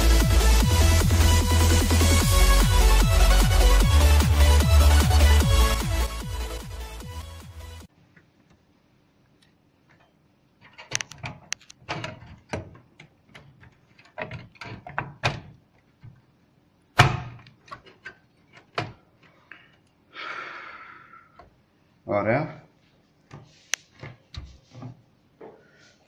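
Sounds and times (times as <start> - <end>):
computer hardware clicks and knocks: 9.4 - 16.2.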